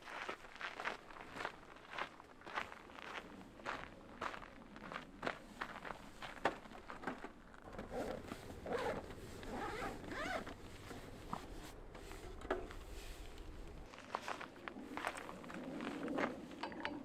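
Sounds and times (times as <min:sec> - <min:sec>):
zipper being pulled: 0:07.8 - 0:10.6.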